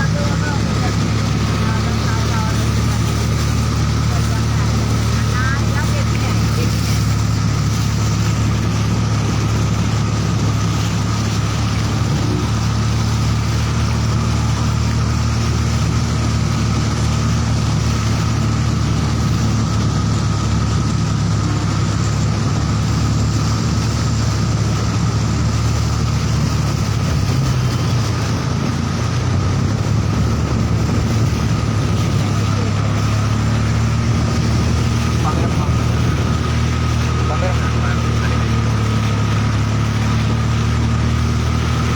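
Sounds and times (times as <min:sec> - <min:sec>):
engine droning: 0:00.0 - 0:41.9.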